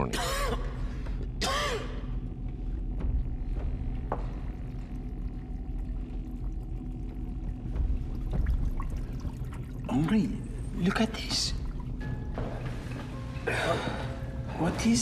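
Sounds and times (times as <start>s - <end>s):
low droning hum: 0.0s - 15.0s.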